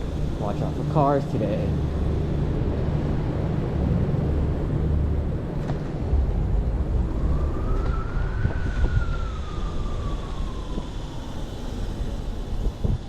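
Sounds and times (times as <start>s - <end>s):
wind rushing over microphone: 1.9s - 13.0s
rising and falling tone: 6.0s - 11.0s.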